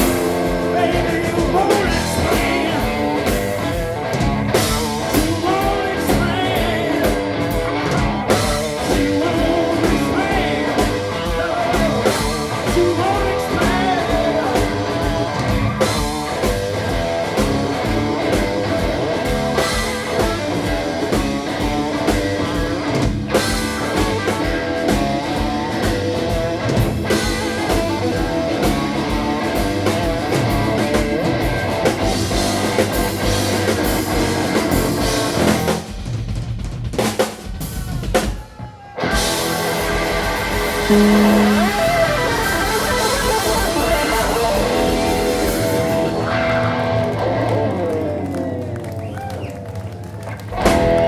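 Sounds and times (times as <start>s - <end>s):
electric guitar: 0.0s - 36.1s, 39.0s - 51.0s
drum kit beat: 0.0s - 46.4s
bass guitar: 0.0s - 51.0s.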